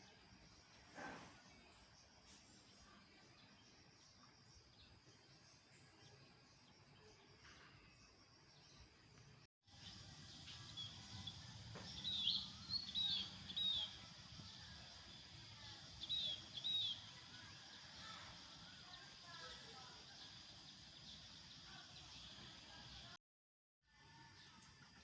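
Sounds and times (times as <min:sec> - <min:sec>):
bird chirping: 0:00.0 - 0:18.2.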